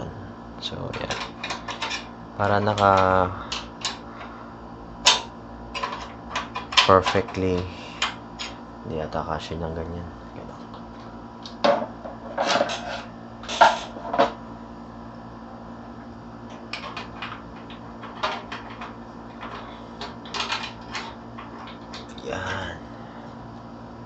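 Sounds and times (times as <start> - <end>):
metal case parts knocking and clattering: 5.0 - 7.6, 16.7 - 22.1.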